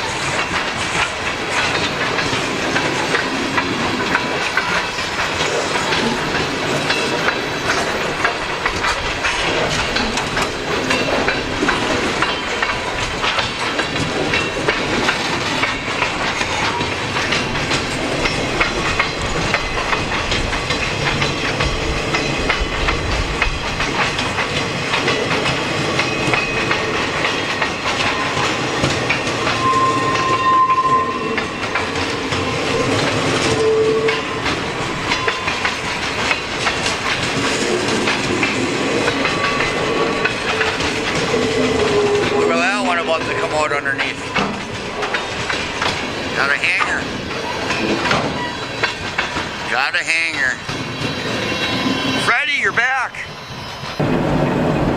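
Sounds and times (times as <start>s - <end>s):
train wheels clicking over rail joints: 0.0s - 54.9s
steady high tone: 29.4s - 31.8s.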